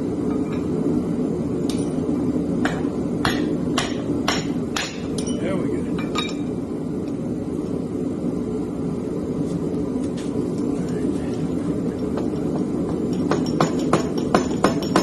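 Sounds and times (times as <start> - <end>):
steady low rumble: 0.0 - 14.9
sharp metal knocks: 2.6 - 5.3, 12.2 - 15.0.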